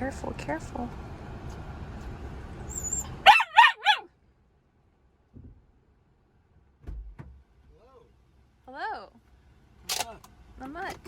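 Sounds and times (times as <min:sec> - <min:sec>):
small dog yapping: 0:02.7 - 0:04.1
car cabin hum: 0:03.0 - 0:04.0.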